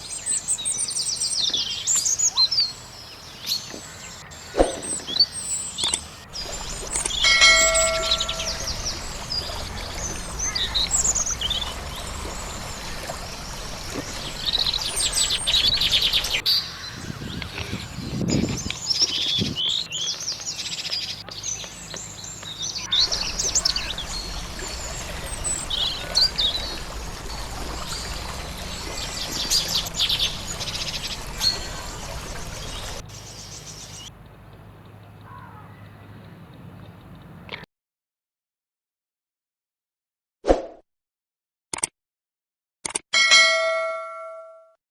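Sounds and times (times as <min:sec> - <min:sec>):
birds chirping and singing: 0:00.0 - 0:34.1.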